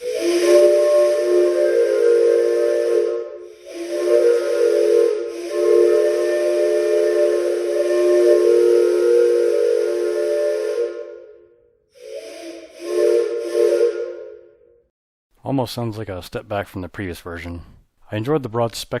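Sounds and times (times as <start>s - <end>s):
steam whistle chord: 0.0s - 14.9s.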